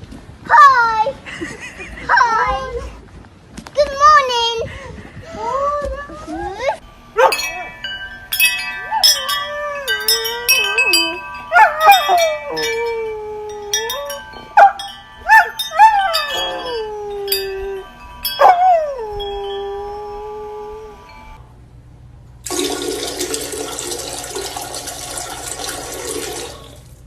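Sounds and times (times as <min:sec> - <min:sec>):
chimes ringing: 0:06.8 - 0:21.4
dog howling: 0:06.9 - 0:21.4.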